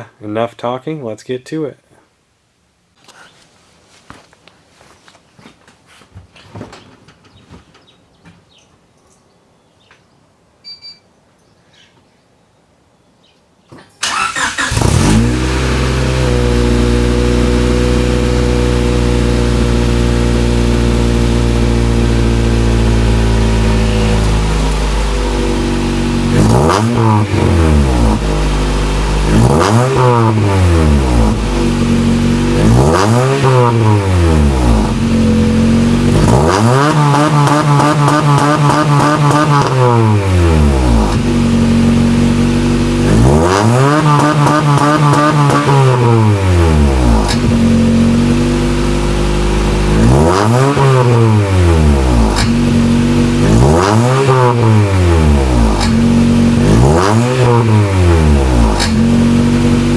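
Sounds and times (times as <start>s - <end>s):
car engine starting and idling: 14.0s - 59.9s
engine revving: 14.0s - 59.9s.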